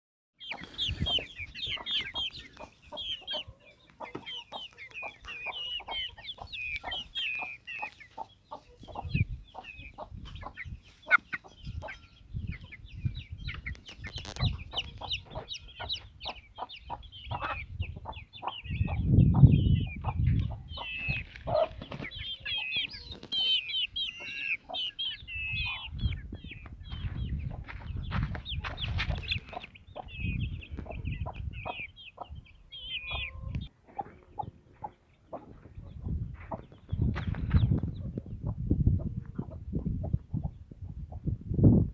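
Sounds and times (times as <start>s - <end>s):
chickens clucking: 0.4s - 41.9s.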